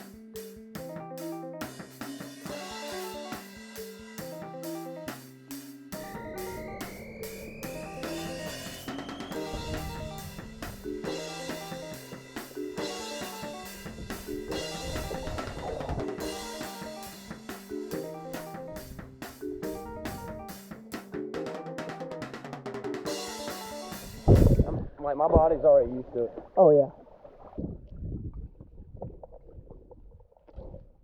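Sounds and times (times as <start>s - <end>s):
drum-kit beat: 0.0s - 24.7s
repeating melody: 2.5s - 5.3s, 6.0s - 22.2s, 22.9s - 24.6s.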